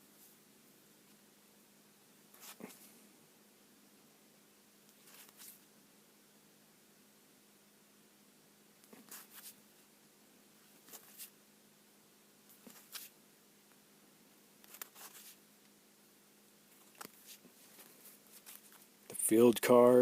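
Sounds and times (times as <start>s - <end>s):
trading cards flicking and sliding: 2.4s - 2.9s, 4.9s - 5.6s, 8.9s - 9.6s, 10.8s - 11.4s, 12.5s - 13.2s, 14.6s - 15.4s, 16.8s - 18.9s.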